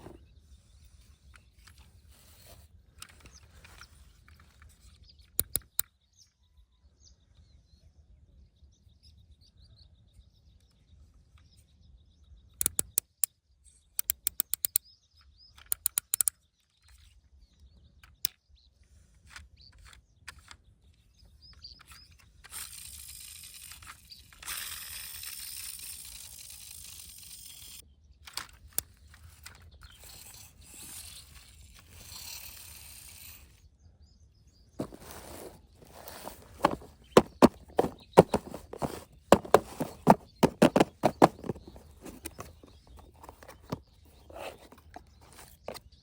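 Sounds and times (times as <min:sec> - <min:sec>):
sharp plastic clicks and rattles: 0:05.4 - 0:05.8, 0:15.6 - 0:16.3.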